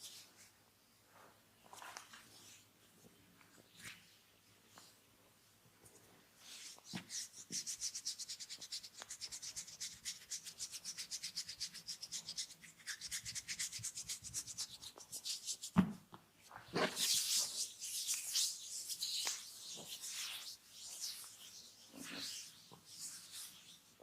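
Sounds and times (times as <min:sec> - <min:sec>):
hands rubbing skin rhythmically: 0:06.5 - 0:15.8, 0:16.8 - 0:24.0.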